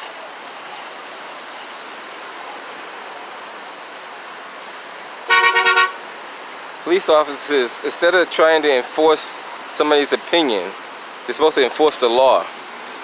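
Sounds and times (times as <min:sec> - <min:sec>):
road traffic roar: 0:00.0 - 0:09.8
car horn honks: 0:05.3 - 0:06.0.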